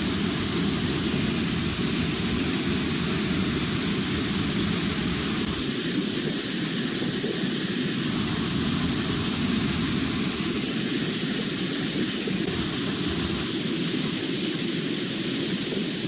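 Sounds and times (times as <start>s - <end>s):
waterfall roaring: 0.0s - 5.8s, 8.0s - 13.9s.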